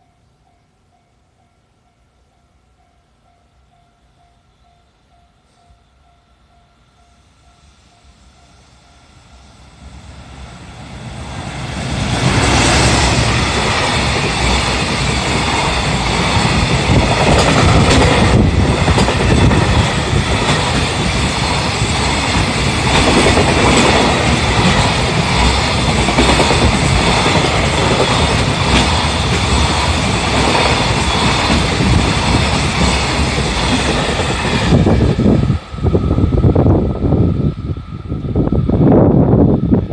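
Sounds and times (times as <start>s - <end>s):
freight train passing: 0.0s - 39.9s
wagon wheels rumbling on rails: 12.3s - 35.1s.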